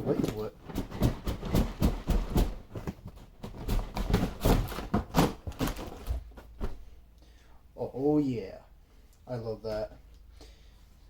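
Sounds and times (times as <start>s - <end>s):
box and packaging handling: 0.0s - 6.8s.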